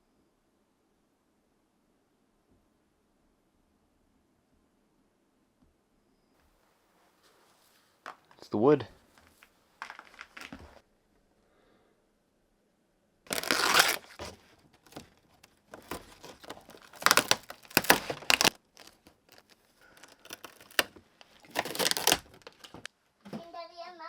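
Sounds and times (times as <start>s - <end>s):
rotted wood tearing and cracking: 13.3s - 22.9s.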